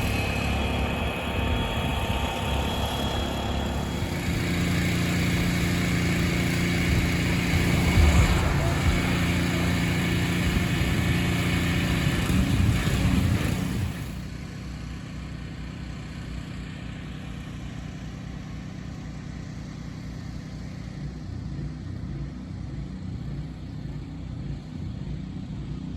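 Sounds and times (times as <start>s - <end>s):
construction machinery engine running: 0.0s - 25.9s.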